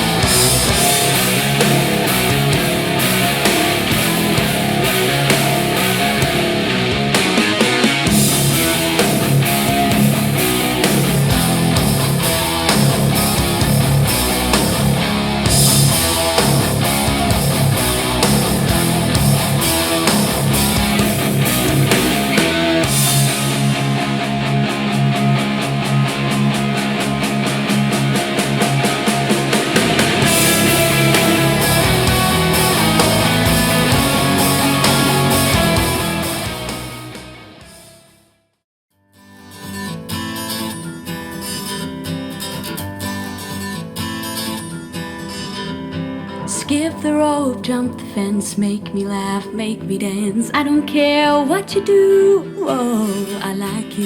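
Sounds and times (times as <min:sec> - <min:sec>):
deep bass: 0:00.0 - 0:07.3, 0:08.0 - 0:37.4
steady beat: 0:00.0 - 0:37.5
strummed acoustic guitar: 0:00.0 - 0:37.8, 0:39.1 - 0:50.3
instrumental rock music: 0:00.0 - 0:38.2, 0:39.2 - 0:50.3.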